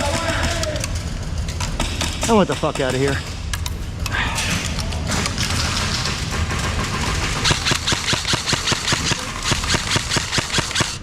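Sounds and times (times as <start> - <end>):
low rumble and hiss: 0.0 - 10.1
airsoft gun rapid fire: 5.4 - 11.0.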